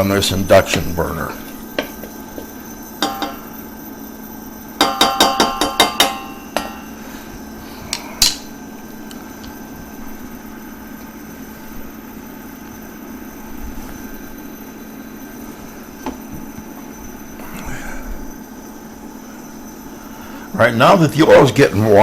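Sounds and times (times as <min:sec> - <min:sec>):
faint steady hum: 0:00.0 - 0:22.0
metal kitchenware clinking on a pan: 0:03.0 - 0:03.5, 0:04.8 - 0:07.0.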